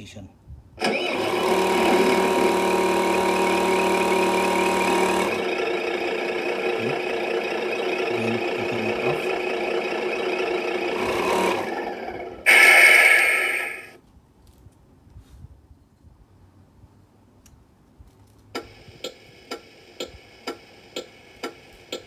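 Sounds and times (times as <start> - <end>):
simulated truck engine idling: 1.5 - 12.5.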